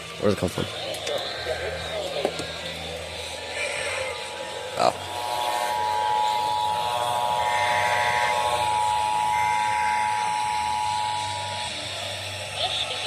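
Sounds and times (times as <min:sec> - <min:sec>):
radio background hiss: 0:00.0 - 0:13.0.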